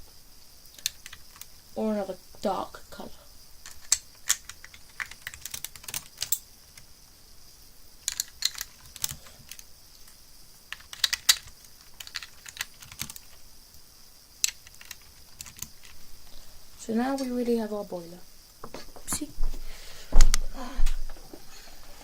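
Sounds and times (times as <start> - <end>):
plastic bricks clicking: 0.7 - 1.6, 3.6 - 6.9, 8.0 - 9.7, 10.7 - 13.4, 14.4 - 16.0.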